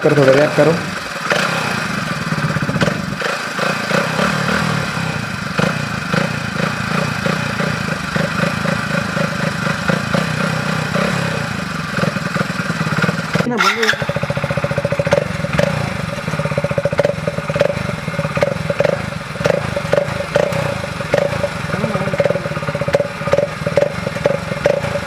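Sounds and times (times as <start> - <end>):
motorcycle engine putter: 0.1 - 25.0.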